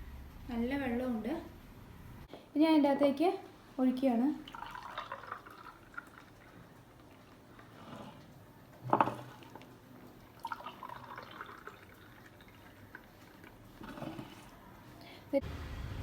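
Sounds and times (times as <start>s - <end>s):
juice pouring into a glass: 4.4s - 8.2s, 9.0s - 14.4s.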